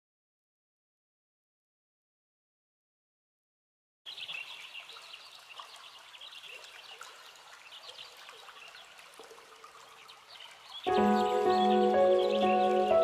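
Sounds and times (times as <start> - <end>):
high bird chirps: 10.8 - 13.0.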